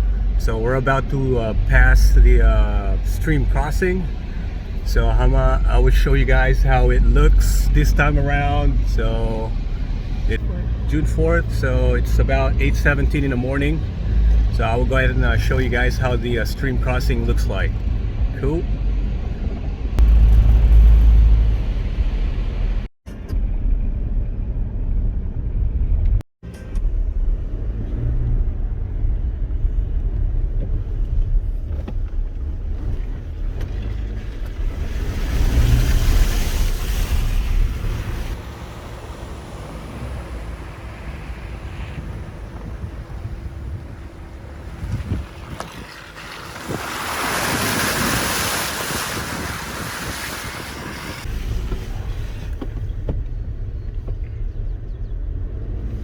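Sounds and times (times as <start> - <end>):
vehicle engine and tyres rumble: 0.0 - 56.0
water splashing against vehicle: 30.4 - 54.2.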